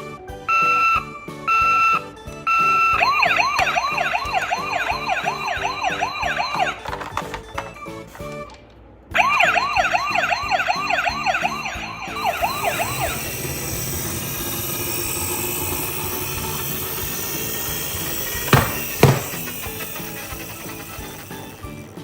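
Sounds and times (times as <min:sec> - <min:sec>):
toy ambulance siren yelping: 0:00.5 - 0:22.0
sharp knocks: 0:18.5 - 0:19.5.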